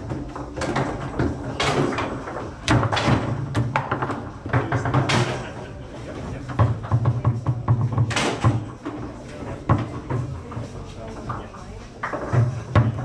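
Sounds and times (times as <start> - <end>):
foosball ball knocks and cracks: 0.0 - 5.6, 6.5 - 10.3, 12.0 - 13.0.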